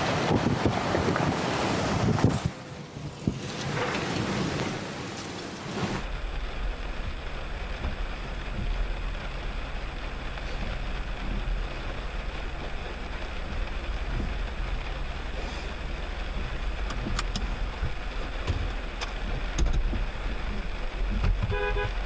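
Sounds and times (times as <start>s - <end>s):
wind buffeting microphone: 0.0s - 4.9s, 5.7s - 21.6s
rain: 0.0s - 22.0s
storm wind: 0.0s - 22.0s.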